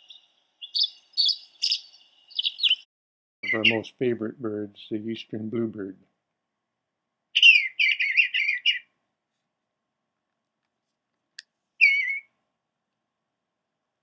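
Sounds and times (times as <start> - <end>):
bird singing warbled phrase: 0.0 - 6.0, 7.4 - 8.9, 11.8 - 12.3.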